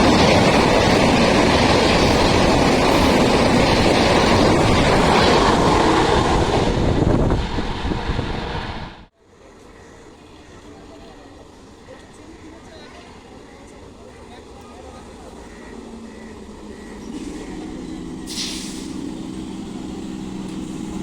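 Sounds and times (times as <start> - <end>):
train wheels rumbling on rails: 0.0 - 21.0.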